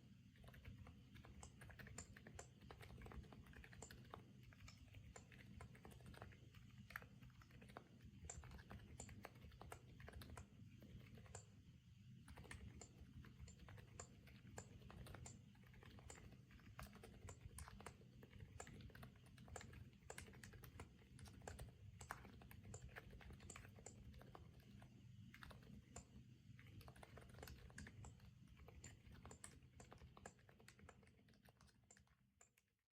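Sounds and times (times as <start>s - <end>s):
rapid typing on mechanical keyboard: 0.3s - 11.6s, 12.2s - 32.7s.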